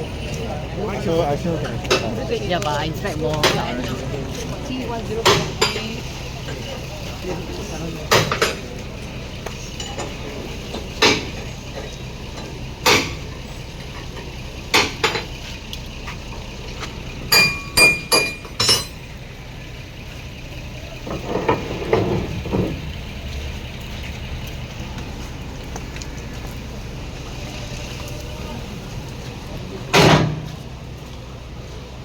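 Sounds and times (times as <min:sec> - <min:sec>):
low engine hum: 0:00.0 - 0:32.0
metallic clinks and knocks: 0:17.3 - 0:19.1.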